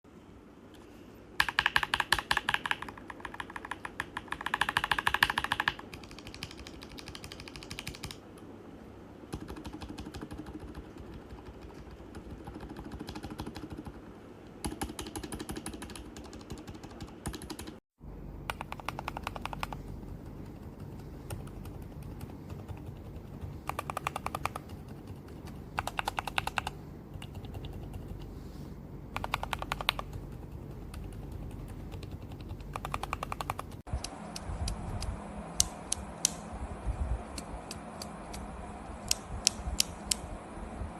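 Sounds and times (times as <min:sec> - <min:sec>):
typing on a mechanical keyboard: 0:01.4 - 0:08.2, 0:09.3 - 0:14.0, 0:14.6 - 0:17.8, 0:18.5 - 0:28.3, 0:29.1 - 0:33.9.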